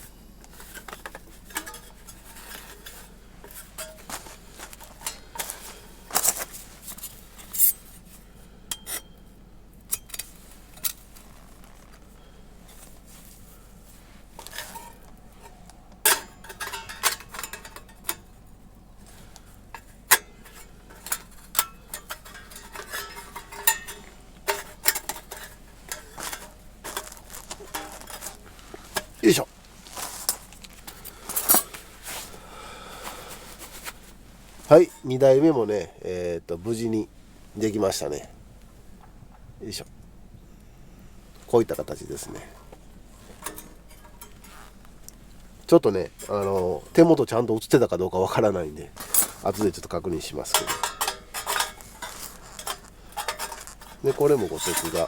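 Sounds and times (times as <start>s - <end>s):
metal plates clinking: 0.6s - 8.1s, 8.7s - 9.2s, 14.4s - 32.0s, 41.9s - 44.8s, 48.9s - 55.0s.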